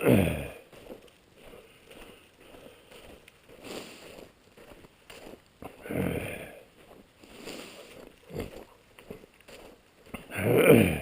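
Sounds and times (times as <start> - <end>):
footsteps crunching on icy snow: 0.0 - 11.0.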